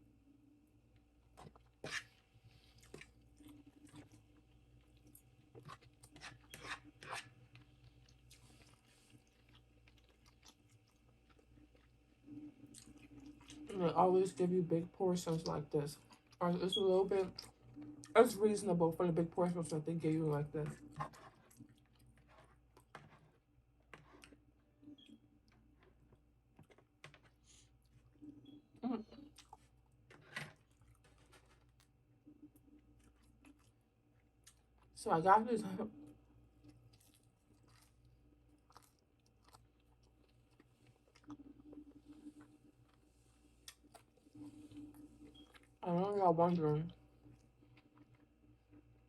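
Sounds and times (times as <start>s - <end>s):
close-up chewing: 1.0s - 13.7s, 20.7s - 28.5s, 29.1s - 35.0s, 36.1s - 45.8s, 47.2s - 49.0s
person eating: 1.3s - 13.7s, 28.8s - 34.9s, 36.5s - 45.8s.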